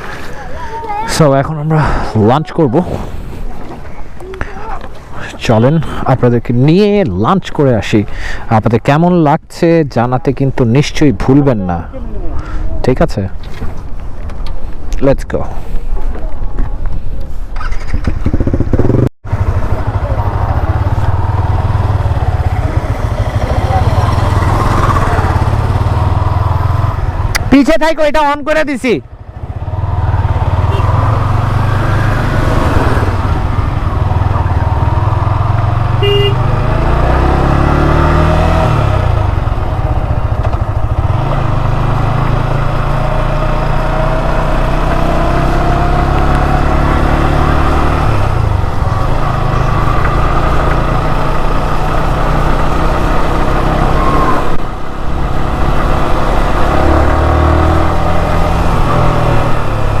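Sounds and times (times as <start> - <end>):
motorcycle engine revving: 17.6 - 27.5, 29.0 - 60.0.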